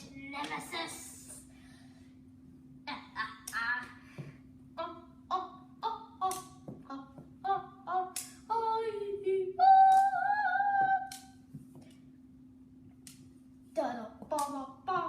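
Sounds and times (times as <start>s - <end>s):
person singing wordless syllables: 4.8s - 11.3s.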